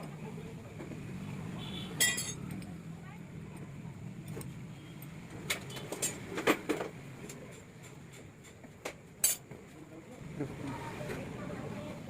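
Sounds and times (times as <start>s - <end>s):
metal tools clinking: 2.0s - 2.5s.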